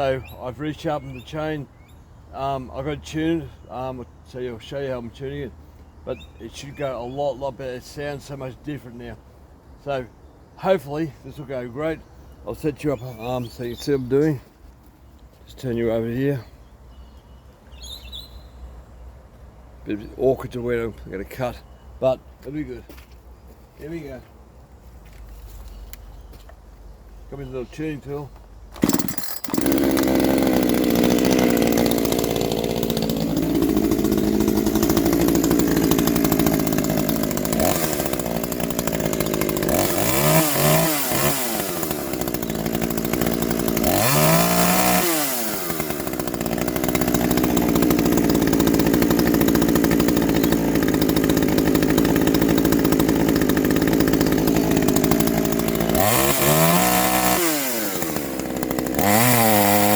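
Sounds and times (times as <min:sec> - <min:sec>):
chainsaw running hard: 0:28.7 - 0:59.9.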